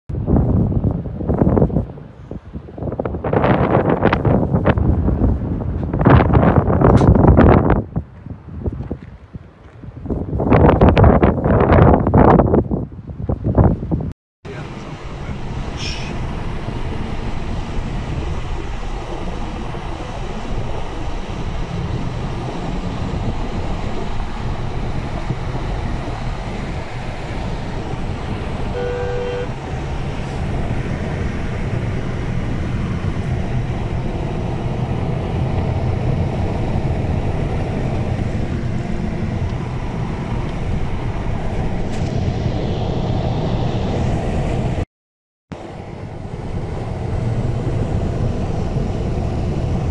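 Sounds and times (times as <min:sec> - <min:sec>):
low outdoor rumble: 0:00.1 - 0:44.8, 0:45.5 - 0:49.9
vehicle horn toot: 0:28.7 - 0:29.6.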